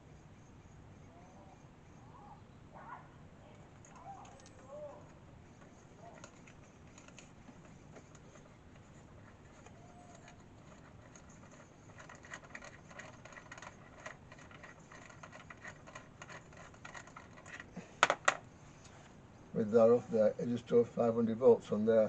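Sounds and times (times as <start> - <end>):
faint scratching and taps: 3.5 - 19.2.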